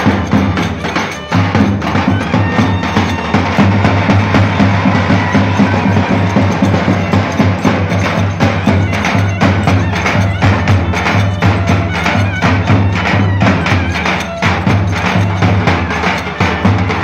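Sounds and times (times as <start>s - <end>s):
clicking percussion: 0.0s - 17.0s
drum beating fast rhythm: 0.0s - 17.0s.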